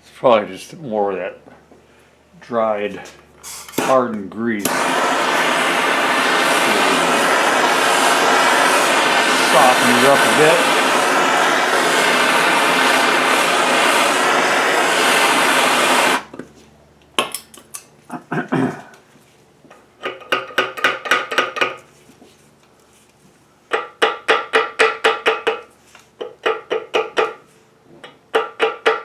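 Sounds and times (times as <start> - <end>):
heat gun blowing: 4.6 - 16.3.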